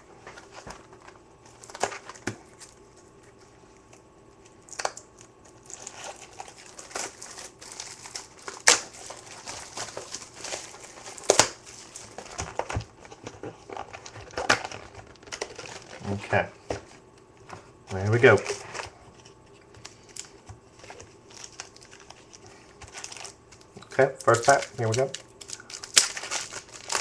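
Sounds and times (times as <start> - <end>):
card packaging crinkling and tearing: 0.2 - 3.0, 4.7 - 16.4, 17.9 - 27.0
sharp packaging snaps: 4.7 - 11.6, 24.2 - 27.0.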